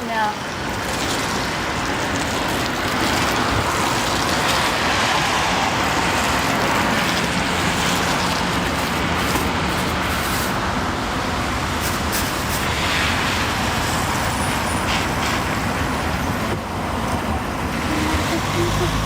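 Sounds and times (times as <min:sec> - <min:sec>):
passing traffic: 0:00.0 - 0:19.0
faint engine hum: 0:17.3 - 0:19.0.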